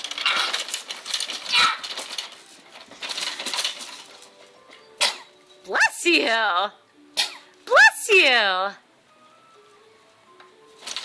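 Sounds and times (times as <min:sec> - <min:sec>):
raspy fake coughing: 0:05.0 - 0:05.3, 0:07.2 - 0:07.6.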